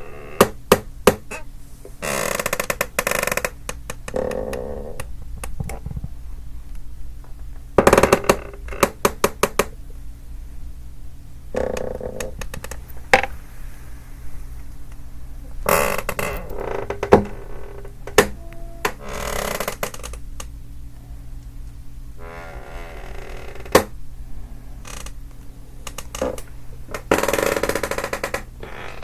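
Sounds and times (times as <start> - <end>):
wooden chair creaking: 0.0 - 6.2, 7.8 - 9.8, 11.5 - 13.4, 15.6 - 20.2, 22.2 - 24.0, 24.8 - 25.2, 25.8 - 29.0.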